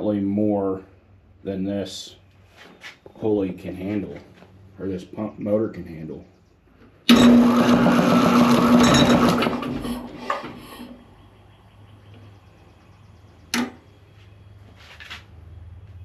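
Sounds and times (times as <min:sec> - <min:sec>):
electric motor humming: 0:07.1 - 0:10.1.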